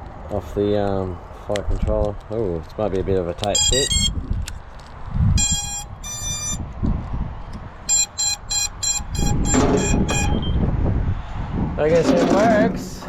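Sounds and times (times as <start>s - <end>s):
drone motor power-up beeps: 3.6s - 4.1s, 5.4s - 6.6s, 7.9s - 10.6s
handling noise: 7.9s - 10.4s.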